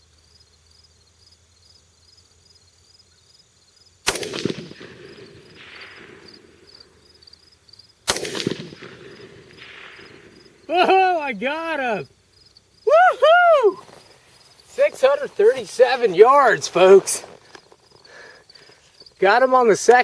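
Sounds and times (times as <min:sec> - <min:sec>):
rifle shots with echo: 0:04.0 - 0:06.7, 0:08.0 - 0:10.6.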